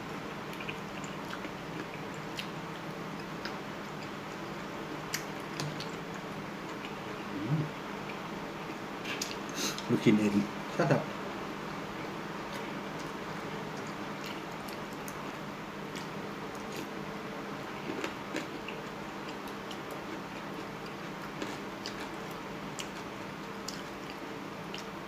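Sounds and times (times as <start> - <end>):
steady low hum: 0.0 - 25.0
chewing smacks: 0.5 - 4.4, 5.1 - 7.0, 8.0 - 9.9, 17.8 - 25.0.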